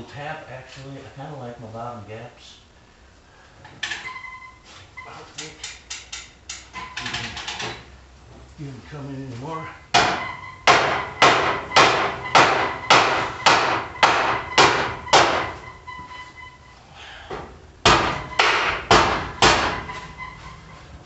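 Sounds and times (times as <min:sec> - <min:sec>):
hammer blows on steel: 0:09.9 - 0:16.5, 0:17.8 - 0:20.9.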